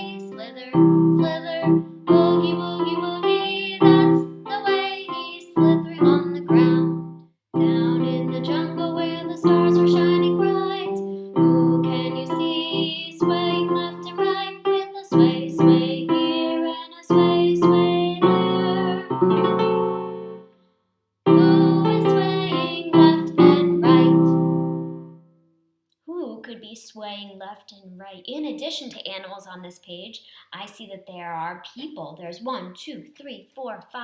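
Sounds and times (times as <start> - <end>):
electric keyboard music: 0.0 - 20.5, 21.3 - 25.2.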